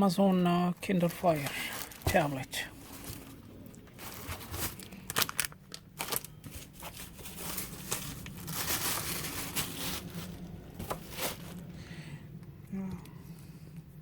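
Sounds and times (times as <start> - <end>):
packaging crinkling and rustling: 0.8 - 11.7.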